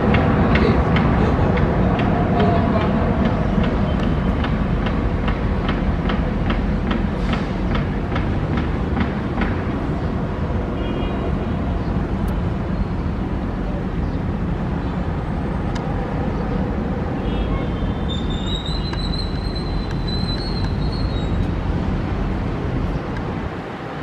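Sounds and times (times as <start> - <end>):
jet engines rumbling: 0.0 - 17.2.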